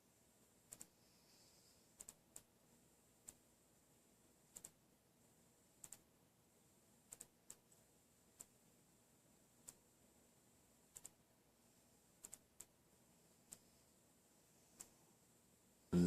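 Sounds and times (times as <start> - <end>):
faint sharp clicks: 0.7 - 1.0, 2.0 - 2.5, 4.5 - 4.8, 5.8 - 6.1, 7.1 - 7.8, 8.4 - 8.6, 9.6 - 9.8, 10.9 - 11.2, 12.2 - 12.8.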